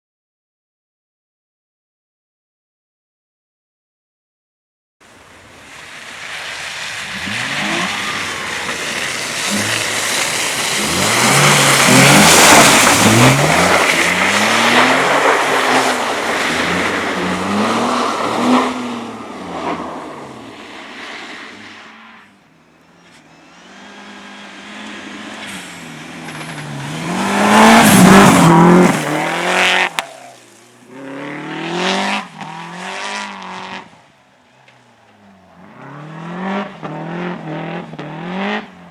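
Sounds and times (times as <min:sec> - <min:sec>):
race car engines revving: 0:05.1 - 0:38.9
race car passing loudly: 0:05.1 - 0:38.9
tyre squeal: 0:06.2 - 0:31.1.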